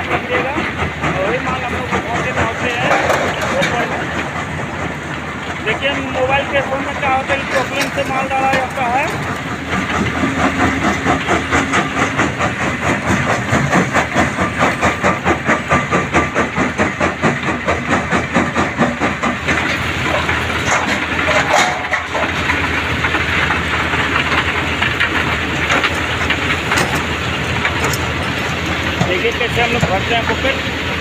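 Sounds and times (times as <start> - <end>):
stone crusher and excavator running: 0.0 - 31.0.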